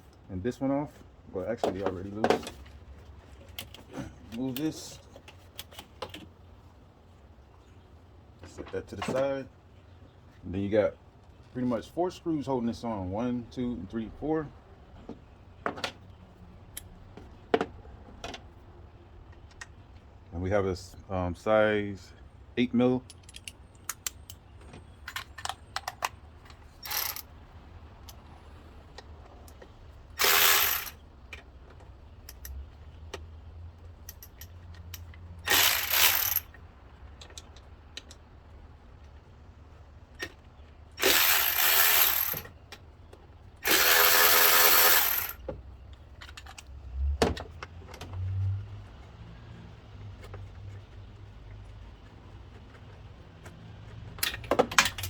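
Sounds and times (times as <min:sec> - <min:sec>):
hand ratchet clicking: 0:26.8 - 0:27.2, 0:30.2 - 0:31.0, 0:34.1 - 0:36.5, 0:41.0 - 0:42.5, 0:43.6 - 0:45.4.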